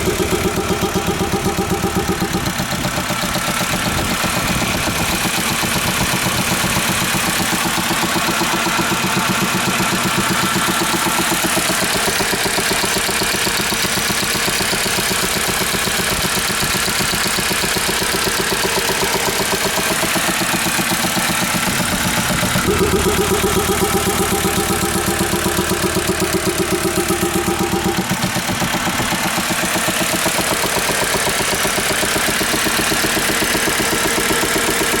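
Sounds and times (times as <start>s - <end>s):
deeper drone: 0.0s - 6.8s, 21.6s - 29.2s
diesel engine idling with knock: 0.0s - 35.0s.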